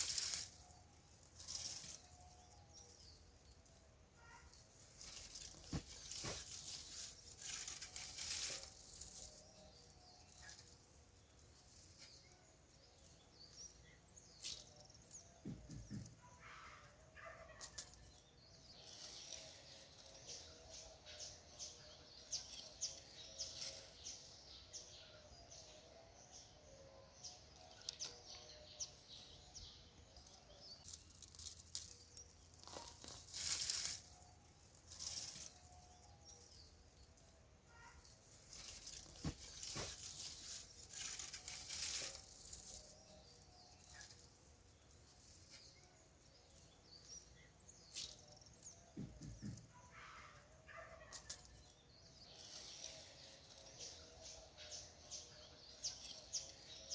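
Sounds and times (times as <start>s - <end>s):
rustling of soil and foliage: 0.0s - 56.9s.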